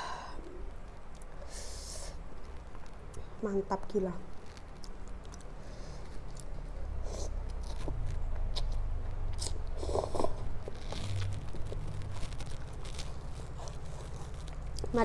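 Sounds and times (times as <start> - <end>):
person chewing noodles: 4.4 - 15.0.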